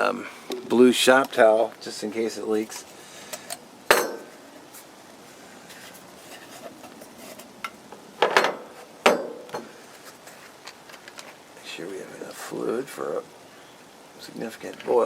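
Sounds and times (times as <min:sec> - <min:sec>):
faint rustling: 0:01.5 - 0:08.0, 0:09.6 - 0:15.0
metal stove parts clinking: 0:03.3 - 0:04.3, 0:08.2 - 0:09.7.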